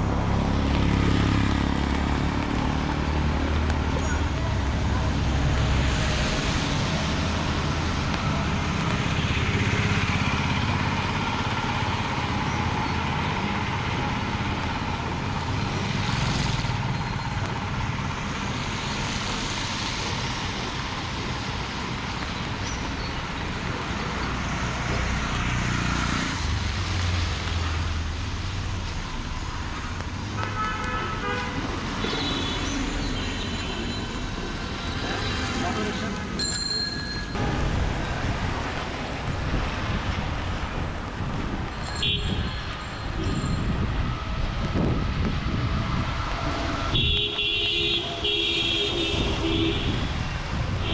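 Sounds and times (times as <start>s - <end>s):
vehicles passing: 0.0s - 50.9s
steady hiss of wet road: 17.7s - 33.4s.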